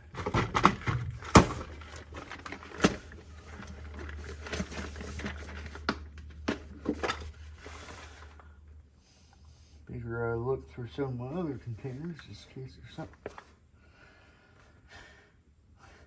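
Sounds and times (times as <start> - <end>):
plastic containers clicking and rattling: 0.0 - 8.4.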